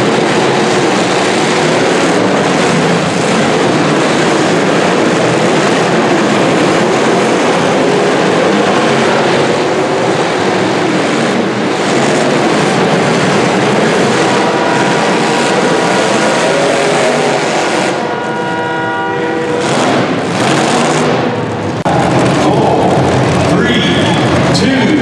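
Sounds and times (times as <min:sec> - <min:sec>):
car engines revving: 0:00.0 - 0:25.0
held pitched tone: 0:21.8 - 0:25.0.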